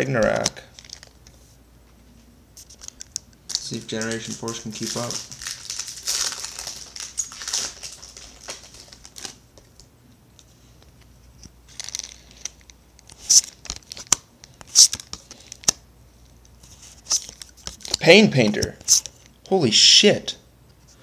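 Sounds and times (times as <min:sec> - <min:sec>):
foil wrapper crinkling and tearing: 0:00.7 - 0:01.2, 0:02.7 - 0:09.4, 0:11.7 - 0:15.7
paper cards handled: 0:02.6 - 0:09.7, 0:11.7 - 0:15.8, 0:16.6 - 0:19.2.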